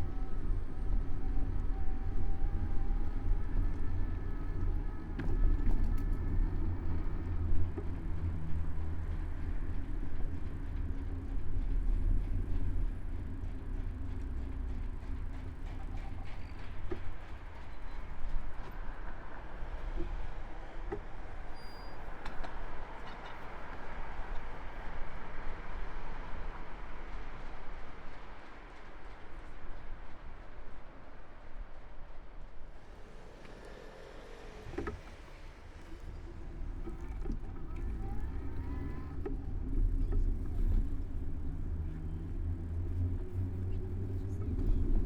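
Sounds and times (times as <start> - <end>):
bicycle riding rumble: 32.7 - 45.0.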